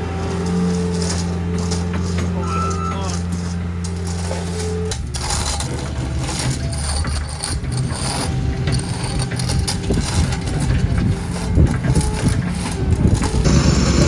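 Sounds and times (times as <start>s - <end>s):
loader engine running: 0.0s - 14.0s
machine clanks and rattles: 0.0s - 14.0s.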